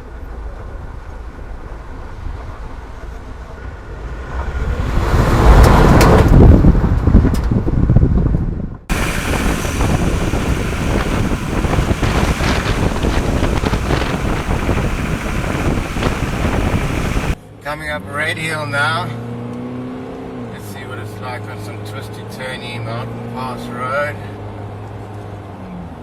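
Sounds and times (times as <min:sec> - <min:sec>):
wind buffeting microphone: 0:03.6 - 0:17.4
road noise: 0:08.9 - 0:17.4.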